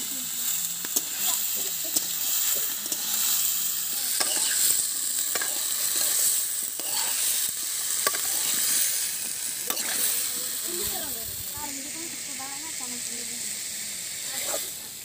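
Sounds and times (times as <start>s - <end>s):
vegetables sizzling in a pan: 0.0s - 15.0s
utensil scraping a pan: 4.2s - 9.0s, 9.6s - 10.3s, 14.3s - 14.8s.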